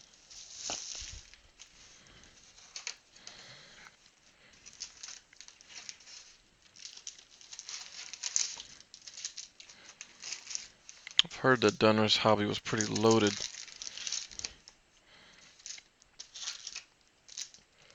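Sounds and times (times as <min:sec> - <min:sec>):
cardboard rustling: 0:00.0 - 0:11.8, 0:12.7 - 0:17.6
plastic wrap crinkling: 0:00.0 - 0:17.9
tearing: 0:04.6 - 0:11.3, 0:12.8 - 0:14.6, 0:15.5 - 0:17.6.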